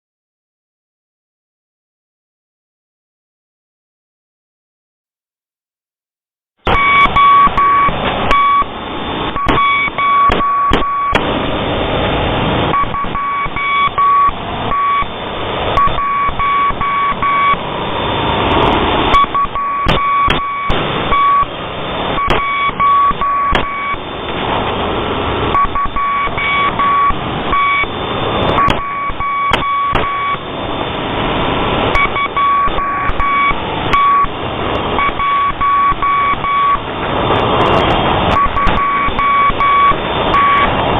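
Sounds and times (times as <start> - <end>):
morse code beeps: 6.7 - 11.3, 12.7 - 18.3, 19.1 - 24.3, 25.5 - 30.8, 31.9 - 40.8
radio static with crackles: 6.7 - 40.9.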